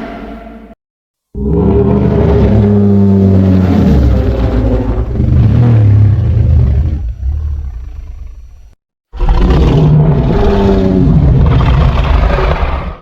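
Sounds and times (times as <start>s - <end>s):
deep monster roar: 1.4s - 7.8s, 9.2s - 13.0s.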